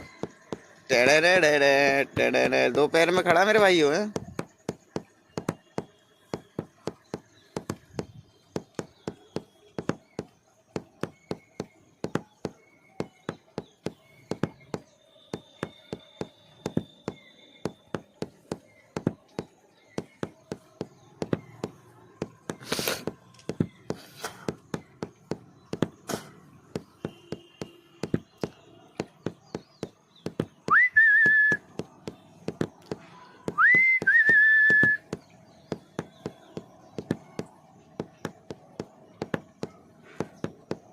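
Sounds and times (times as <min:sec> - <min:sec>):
rising whistle: 0:30.7 - 0:31.6, 0:33.5 - 0:35.0.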